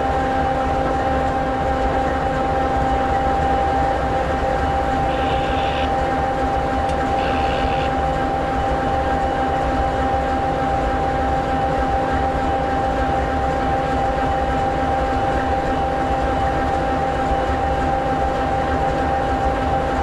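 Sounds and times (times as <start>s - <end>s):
locomotive diesel engine idling: 5.0s - 6.0s, 6.9s - 7.9s.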